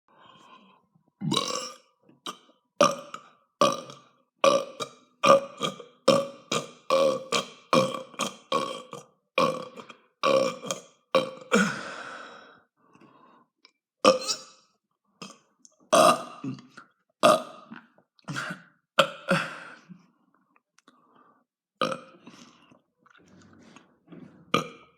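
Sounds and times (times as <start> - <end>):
person burping: 1.2 - 12.0, 14.0 - 14.5, 15.2 - 20.0, 21.8 - 22.6, 24.4 - 24.9.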